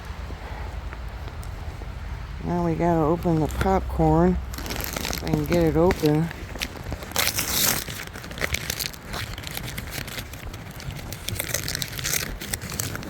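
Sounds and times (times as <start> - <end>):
popcorn bag crinkling: 3.0 - 13.0.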